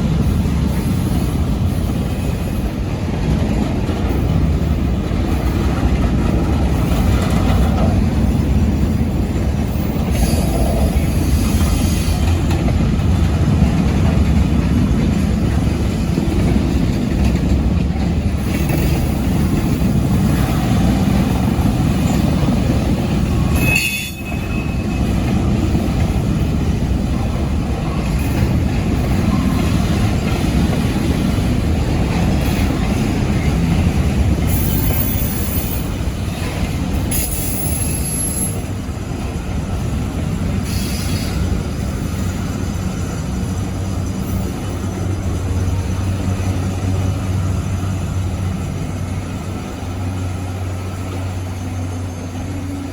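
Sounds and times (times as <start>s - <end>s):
locomotive engine rumble: 0.0s - 52.9s
wheel squeals: 37.1s - 38.7s.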